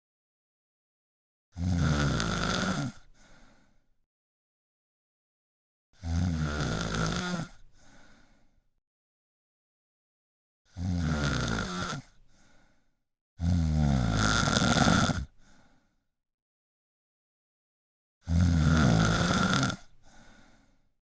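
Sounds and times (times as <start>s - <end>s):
person snoring: 1.6s - 3.4s, 6.0s - 8.2s, 10.7s - 12.2s, 13.4s - 15.7s, 18.2s - 20.7s.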